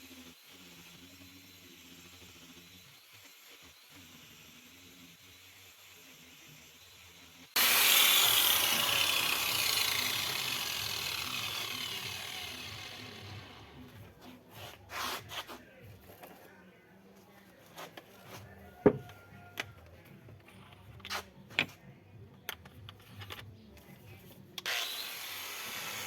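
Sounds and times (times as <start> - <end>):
angle grinder whine winding down: 7.6 - 13.9.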